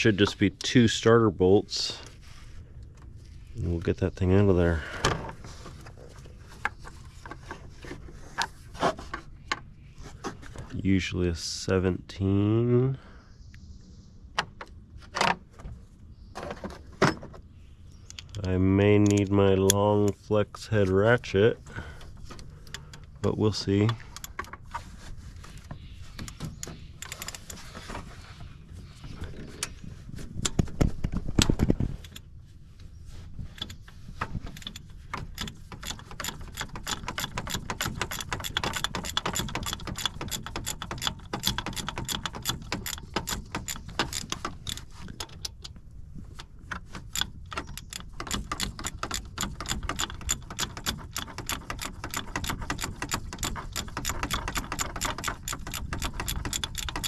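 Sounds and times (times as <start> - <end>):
socket ratchet clicking: 34.5 - 45.6, 47.1 - 57.0.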